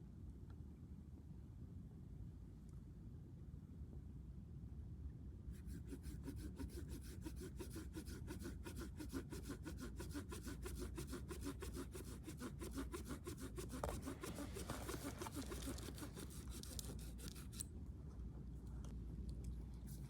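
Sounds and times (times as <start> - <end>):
hand saw cutting wood: 5.6 - 17.6.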